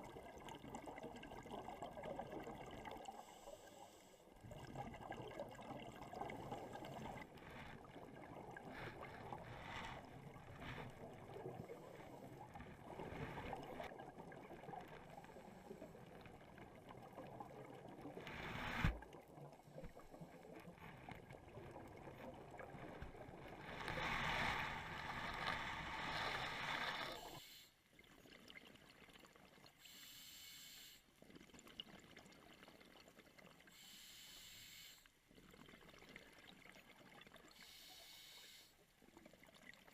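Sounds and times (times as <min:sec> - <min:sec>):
regulator bubbles gurgling: 0:00.0 - 0:29.8.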